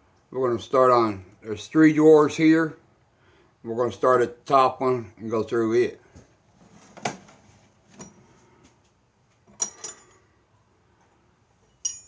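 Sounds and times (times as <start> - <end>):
wrenches clinking: 9.5 - 10.2, 11.8 - 12.0.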